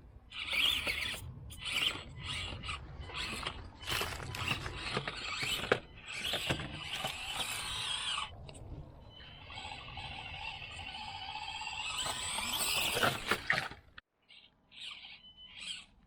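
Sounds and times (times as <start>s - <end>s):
small electric motor whining: 0.0s - 16.0s.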